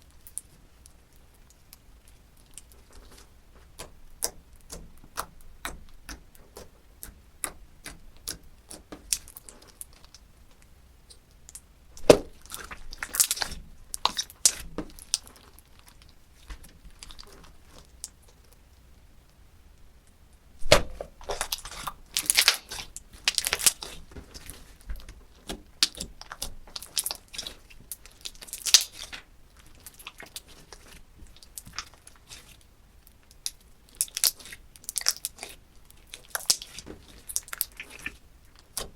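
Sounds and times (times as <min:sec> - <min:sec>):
slime squeezed crackling and popping: 0:11.5 - 0:16.2, 0:20.6 - 0:32.6, 0:33.3 - 0:38.9.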